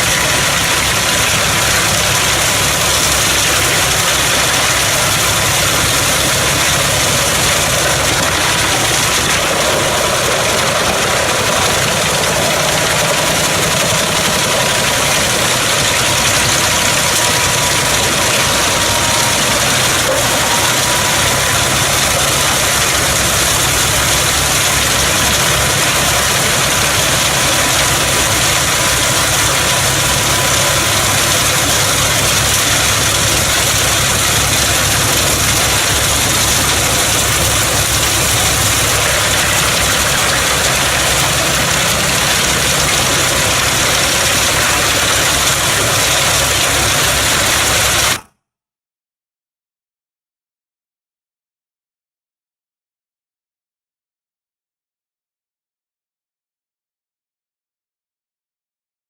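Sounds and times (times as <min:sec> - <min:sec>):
tractor running a wood chipper: 0:00.0 - 0:48.3.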